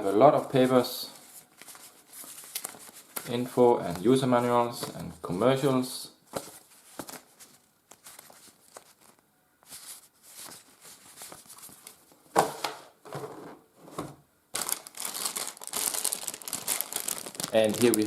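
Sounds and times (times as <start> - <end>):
paper rustling and crinkling: 0.6 - 3.4, 6.3 - 12.1, 14.6 - 18.0.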